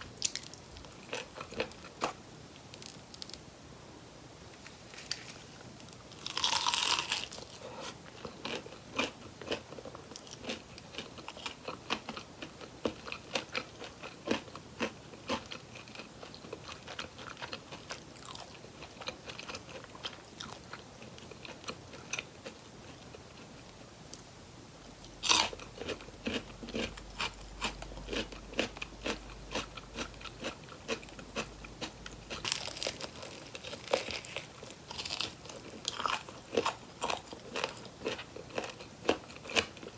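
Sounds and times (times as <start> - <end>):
crackly chewing: 0.1 - 3.4, 4.6 - 24.3, 24.9 - 39.9
crunchy bites of fried chicken: 6.0 - 7.6, 25.1 - 39.9.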